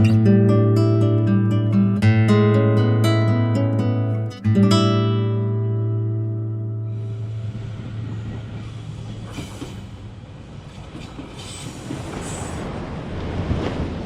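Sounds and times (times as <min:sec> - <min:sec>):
guitar note: 0:00.0 - 0:08.9
rumbling outdoor noise: 0:06.8 - 0:14.0
brief hissing swells: 0:06.9 - 0:10.2.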